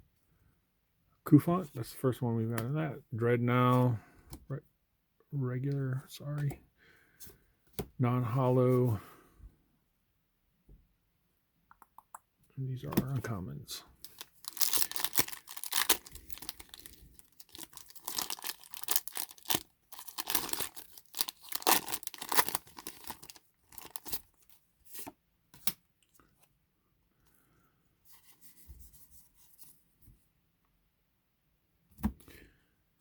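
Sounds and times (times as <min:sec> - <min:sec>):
foil wrapper tearing and crinkling: 0:14.1 - 0:24.4.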